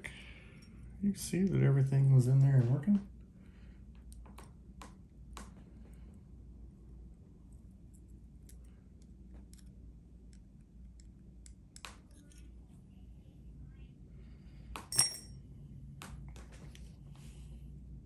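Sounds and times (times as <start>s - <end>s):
sharp ringing metal clink: 14.9s - 15.4s.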